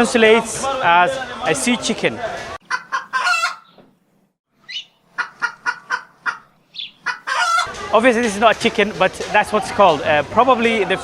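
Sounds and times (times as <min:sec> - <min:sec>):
chicken clucking: 0:02.6 - 0:03.8, 0:04.7 - 0:07.8.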